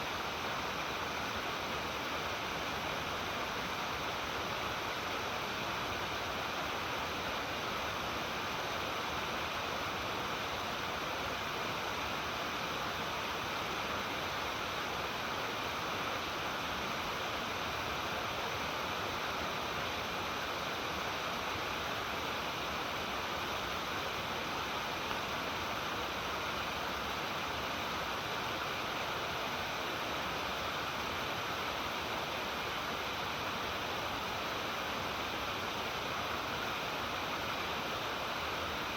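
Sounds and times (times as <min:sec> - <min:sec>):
water splashing down waterfall: 0:00.0 - 0:38.9.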